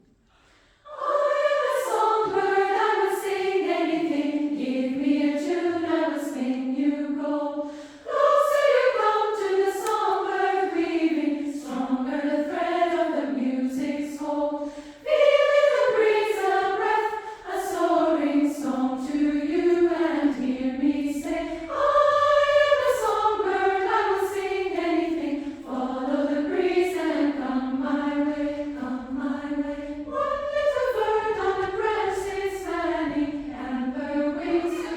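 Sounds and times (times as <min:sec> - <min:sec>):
singers breathing: 0:00.2 - 0:01.0, 0:07.6 - 0:08.2, 0:14.6 - 0:15.1
women's choir singing: 0:00.6 - 0:34.9.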